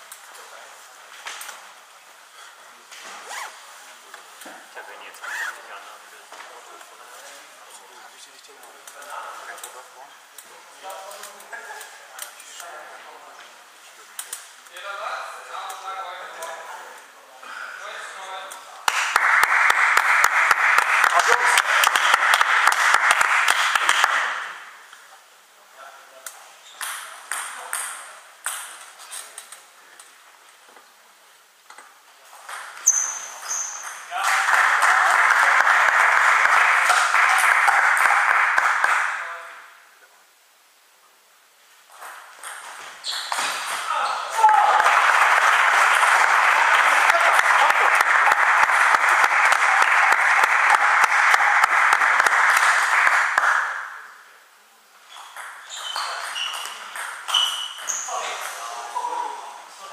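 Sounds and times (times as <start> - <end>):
shoes squeaking on floor: 3.0 - 3.7, 5.2 - 5.7, 32.8 - 34.1, 42.0 - 44.4, 55.0 - 58.5
spectators applauding: 18.9 - 24.6, 34.1 - 39.4, 44.5 - 53.9
table tennis ball bouncing: 26.8 - 28.8, 55.2 - 57.9.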